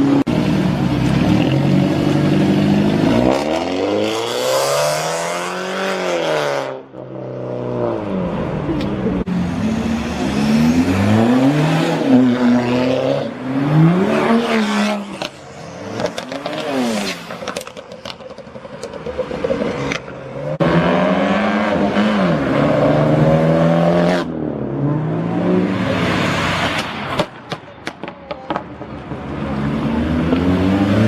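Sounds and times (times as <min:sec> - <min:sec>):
car engine revving: 0:09.2 - 0:27.2.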